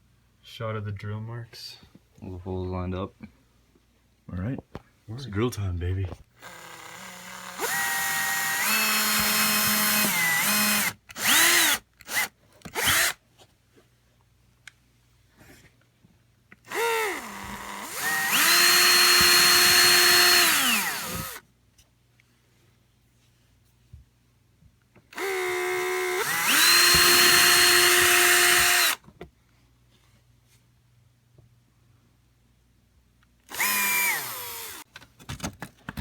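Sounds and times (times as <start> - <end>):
electric drill whining: 6.4 - 13.2, 16.7 - 21.4, 25.2 - 29.0, 33.5 - 34.8.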